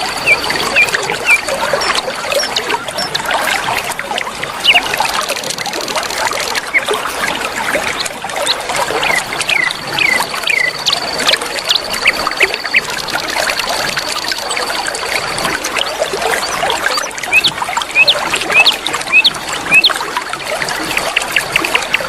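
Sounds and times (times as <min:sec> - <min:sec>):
high bird trill: 0:00.0 - 0:03.2, 0:04.6 - 0:05.3, 0:09.0 - 0:14.8
birds chirping: 0:00.0 - 0:03.3, 0:04.6 - 0:07.0, 0:08.5 - 0:20.0
river water flowing: 0:00.0 - 0:22.0.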